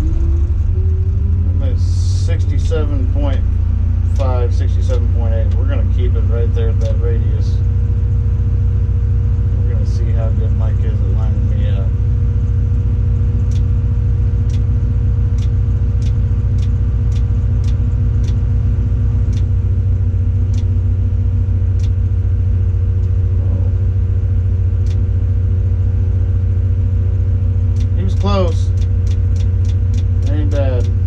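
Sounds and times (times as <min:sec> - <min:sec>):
diesel engine low hum: 0:00.0 - 0:31.0
light clicks: 0:13.4 - 0:13.7, 0:15.3 - 0:18.4, 0:21.8 - 0:22.0, 0:24.8 - 0:25.0, 0:27.7 - 0:31.0.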